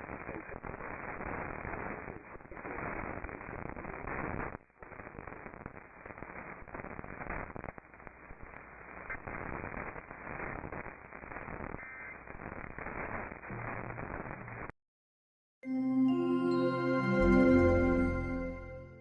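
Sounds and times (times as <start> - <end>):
radio static hiss: 0.0 - 14.8.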